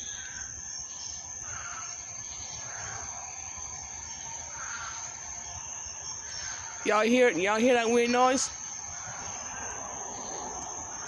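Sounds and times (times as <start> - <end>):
crickets and cicadas trilling: 0.0 - 11.0.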